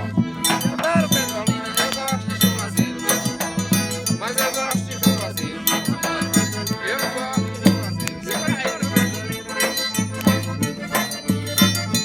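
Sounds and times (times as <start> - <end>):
accordion chords: 0.0 - 12.0
bass drum beat: 0.0 - 12.0.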